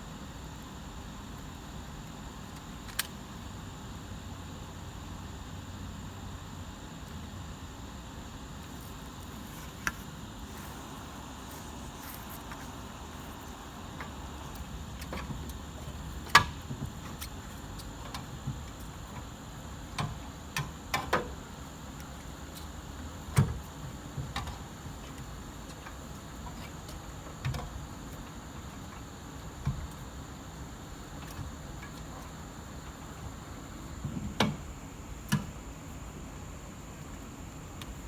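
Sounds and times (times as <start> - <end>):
steady hiss: 8.5 - 38.0.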